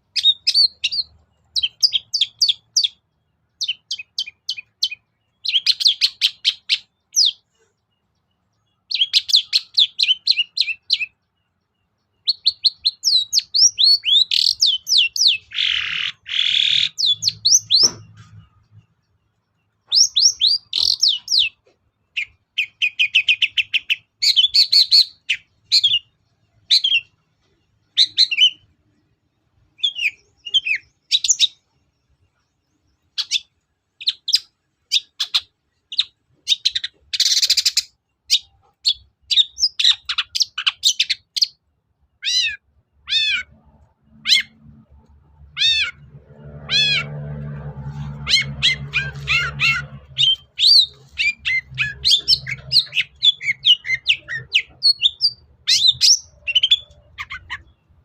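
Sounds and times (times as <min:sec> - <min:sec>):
bird rapid high chirping: 0:00.0 - 0:28.8, 0:29.7 - 0:41.6, 0:42.2 - 0:58.0
bird harsh rasping note: 0:45.6 - 0:53.0.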